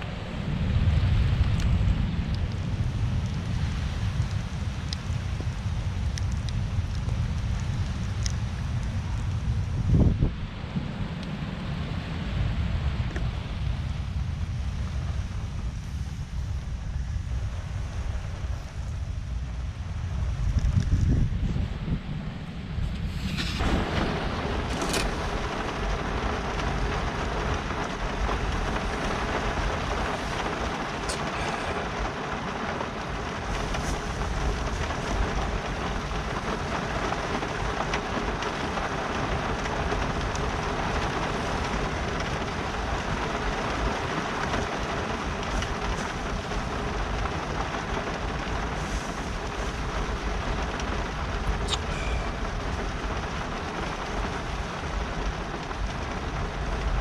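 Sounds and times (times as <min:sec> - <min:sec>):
low rumble: 0:00.0 - 0:38.4
heavy rain on a car: 0:00.0 - 0:57.0
raindrop hits: 0:00.0 - 0:57.0.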